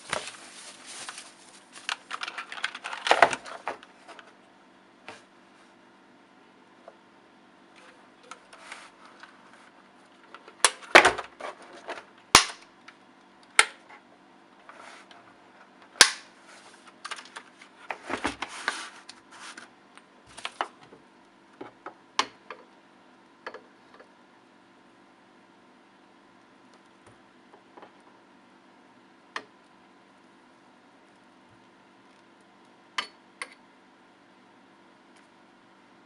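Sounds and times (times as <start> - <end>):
mechanical keyboard keys clacking: 1.9 - 3.4.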